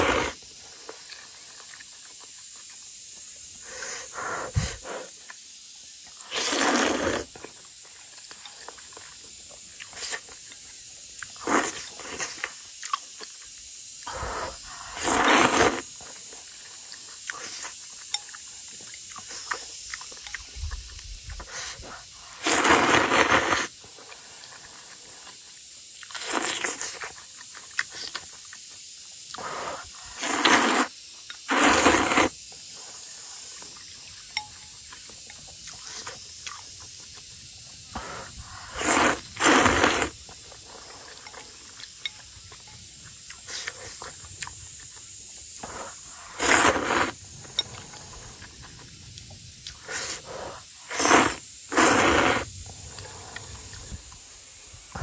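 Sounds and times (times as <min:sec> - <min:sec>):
person slurping noodles: 0:00.0 - 0:00.4, 0:06.2 - 0:07.4, 0:11.4 - 0:12.4, 0:14.1 - 0:15.9, 0:21.4 - 0:23.7, 0:26.2 - 0:27.1, 0:29.4 - 0:30.9, 0:31.5 - 0:32.4, 0:37.9 - 0:41.0, 0:45.6 - 0:48.1, 0:49.7 - 0:54.0.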